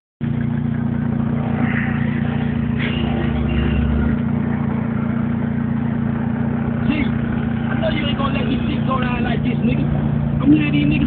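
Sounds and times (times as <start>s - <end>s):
car engine idling: 0.2s - 11.0s.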